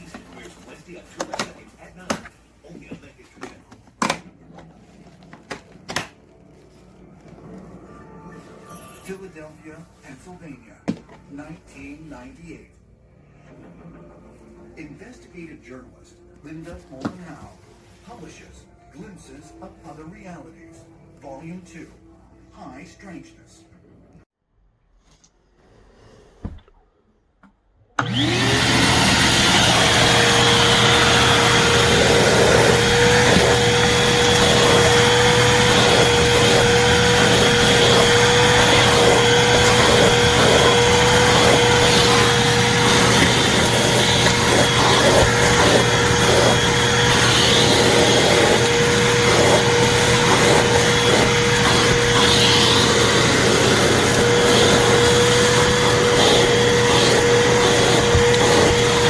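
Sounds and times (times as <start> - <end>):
shop vacuum motor running: 28.0 - 59.0.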